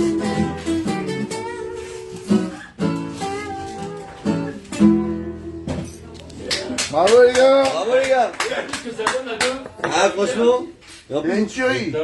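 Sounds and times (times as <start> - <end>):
strummed blues guitar chords: 0.0 - 6.2.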